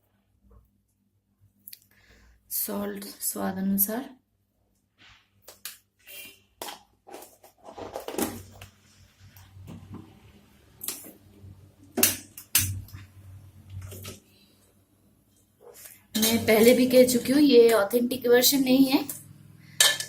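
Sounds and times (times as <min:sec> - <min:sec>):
metal spoon scraping a pot: 0:15.6 - 0:16.8.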